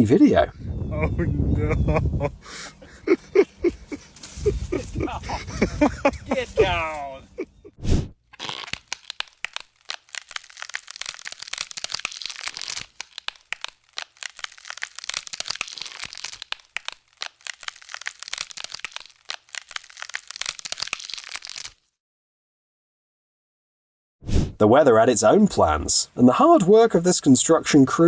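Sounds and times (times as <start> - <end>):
dense crackling and crunching: 3.0 - 21.9.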